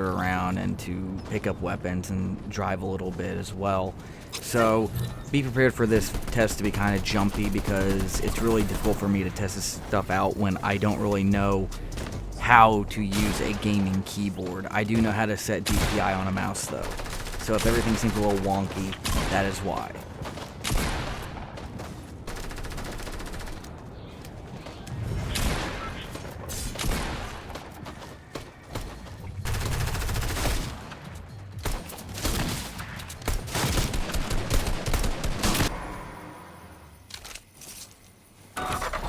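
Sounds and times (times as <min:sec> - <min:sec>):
video game automatic gunfire: 0:05.8 - 0:09.2, 0:15.8 - 0:19.6, 0:20.2 - 0:23.8, 0:25.8 - 0:31.0, 0:33.3 - 0:35.7.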